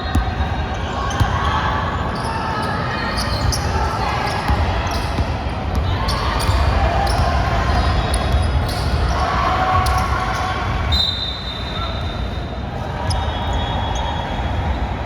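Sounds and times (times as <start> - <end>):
sneaker squeak: 0.0 - 9.2, 13.0 - 14.6
basketball bouncing on court: 0.1 - 1.6, 4.3 - 9.1.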